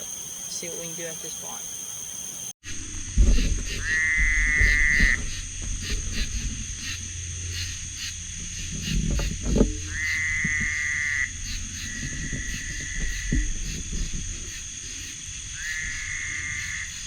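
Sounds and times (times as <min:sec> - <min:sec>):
frog calling: 0:00.0 - 0:17.0
high drone of night insects: 0:00.0 - 0:17.0
low thumps: 0:02.8 - 0:14.5.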